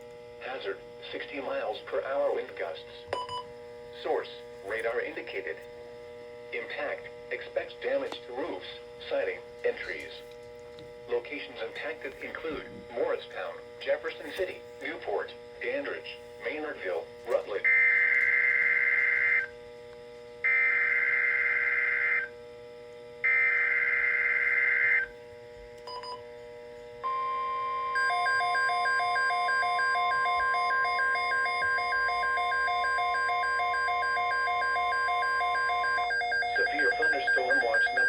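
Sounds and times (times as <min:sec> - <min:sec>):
pulsing beep: 0:27.0 - 0:38.0
screechy digital data bursts: 0:29.3 - 0:38.0.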